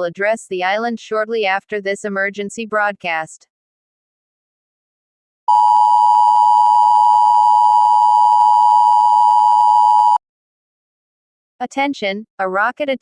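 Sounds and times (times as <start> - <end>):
two-tone electronic alarm: 5.5 - 10.2.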